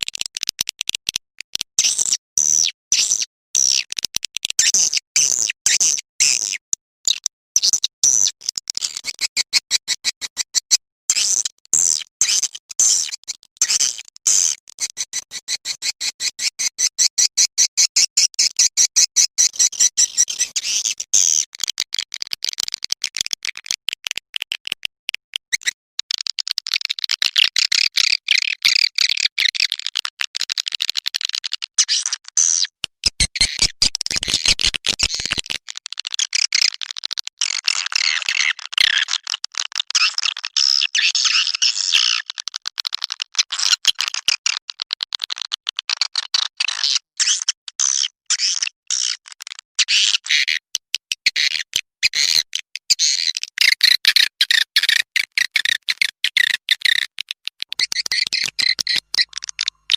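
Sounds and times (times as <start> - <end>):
swiftlet twittering chirps: 57.7 - 59.7.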